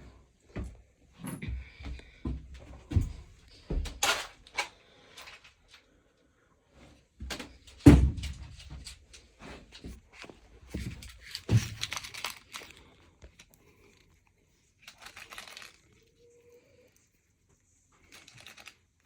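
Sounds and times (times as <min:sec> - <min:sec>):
rustling of handled objects: 0:06.8 - 0:19.0.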